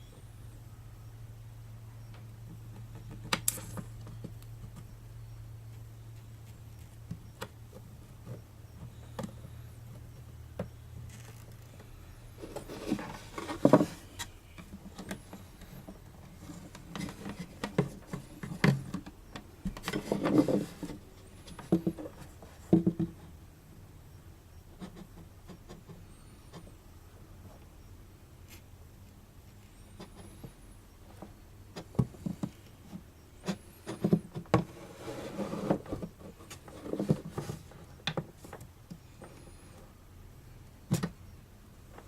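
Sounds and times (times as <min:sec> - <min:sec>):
low steady hum: 0:00.0 - 0:42.0
tools and parts handled on workbench: 0:08.2 - 0:22.9.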